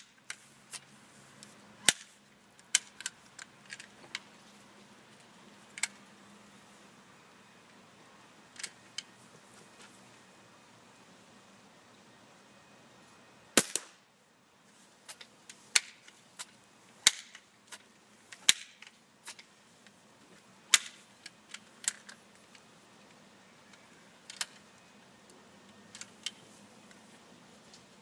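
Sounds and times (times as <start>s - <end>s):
sharp shot-like crack: 13.6s - 14.0s.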